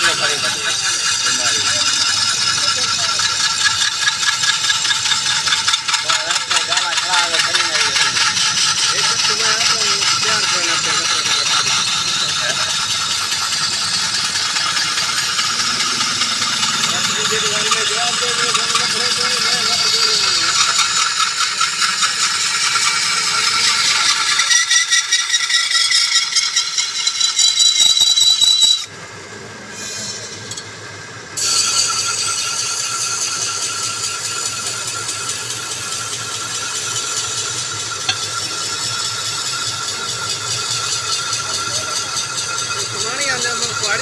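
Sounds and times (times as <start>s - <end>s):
machine rattling: 0.0s - 28.9s, 30.0s - 44.0s.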